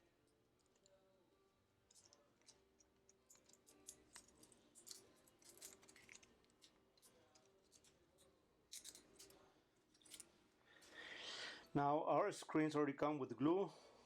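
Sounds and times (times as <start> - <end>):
small parts and tools clicking: 0.6 - 1.0, 1.8 - 11.0.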